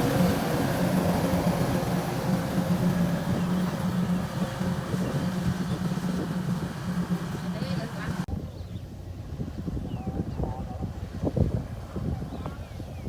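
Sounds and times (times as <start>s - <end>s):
combine harvester diesel engine: 0.0s - 8.3s
machinery noise: 0.0s - 8.3s.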